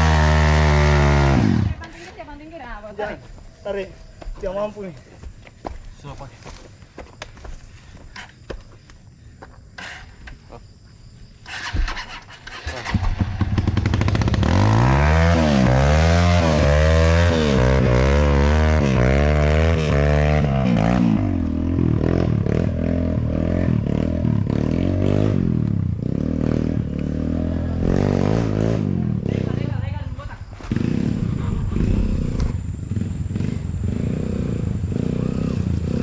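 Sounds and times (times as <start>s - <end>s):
motorcycle engine revving: 0.0s - 1.8s, 11.4s - 29.8s, 30.5s - 36.0s.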